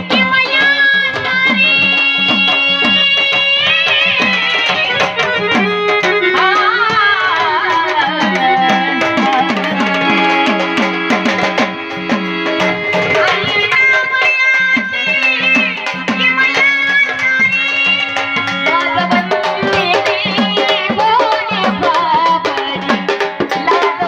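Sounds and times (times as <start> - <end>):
sliding folk melody: 0.0 - 17.0
hand drum beat: 0.0 - 24.0.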